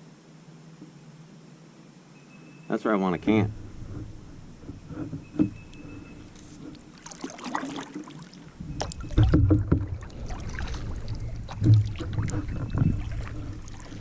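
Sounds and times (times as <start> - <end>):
paddle splashing in water: 4.9 - 14.0.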